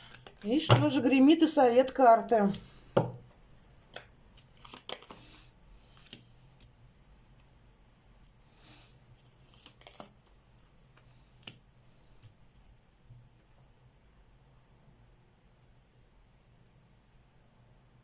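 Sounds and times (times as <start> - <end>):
cards clicking and snapping: 0.0 - 0.7, 3.9 - 5.2, 5.9 - 6.7, 9.5 - 10.4.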